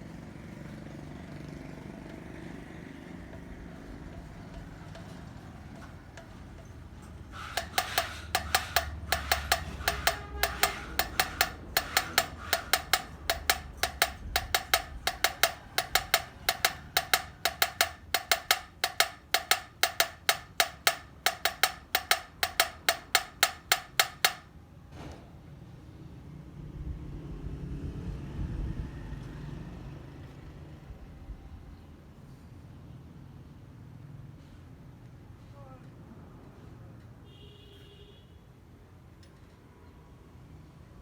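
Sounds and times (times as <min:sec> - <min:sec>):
hammer blows on metal: 0:05.8 - 0:24.5.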